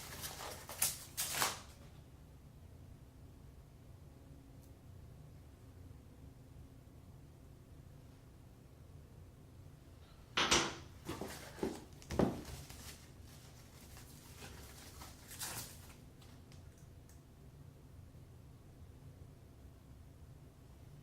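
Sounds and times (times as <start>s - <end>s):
packaging knocks and rustles: 11.0s - 13.1s.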